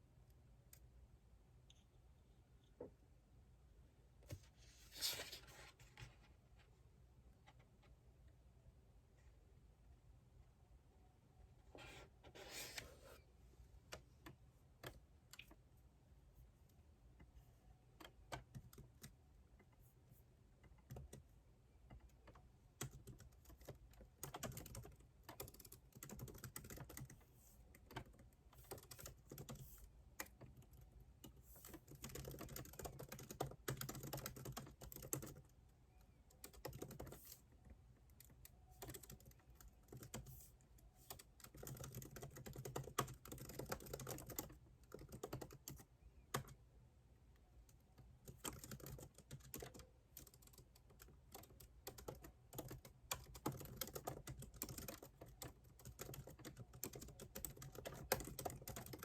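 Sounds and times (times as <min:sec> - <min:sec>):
computer keyboard typing: 0:18.0 - 0:19.2, 0:20.6 - 0:21.3, 0:22.0 - 0:46.6, 0:47.7 - 0:59.0.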